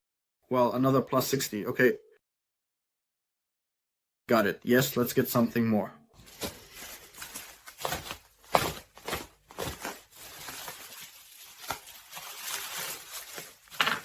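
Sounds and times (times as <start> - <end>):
packaging rustling and ripping: 6.2 - 14.0.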